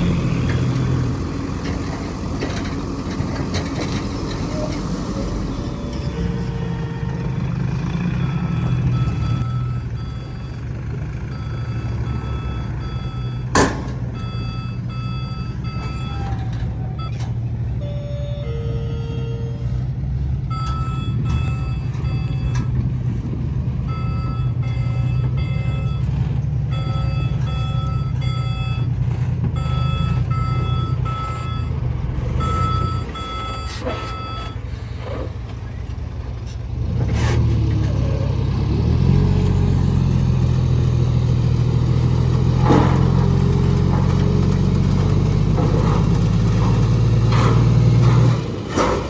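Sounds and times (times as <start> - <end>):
diesel engine of heavy machinery: 0.0 - 49.0
reversing alarm beeping: 4.4 - 19.8, 20.4 - 23.2, 23.8 - 35.0.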